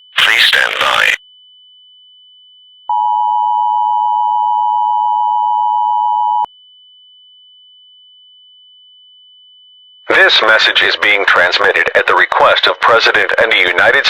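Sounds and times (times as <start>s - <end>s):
two-tone alarm: 0.0s - 10.3s
faint steady high tone: 0.0s - 14.0s.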